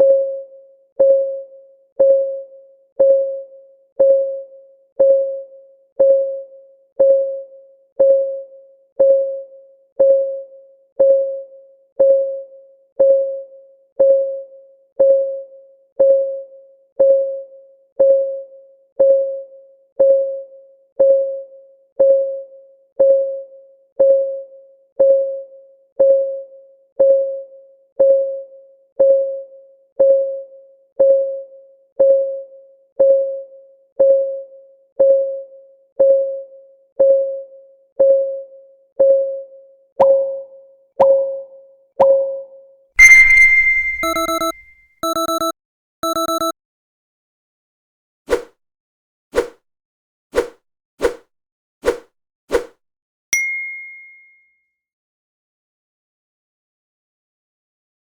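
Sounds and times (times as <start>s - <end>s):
clock ticking with ringing notes: 43.0s - 46.5s.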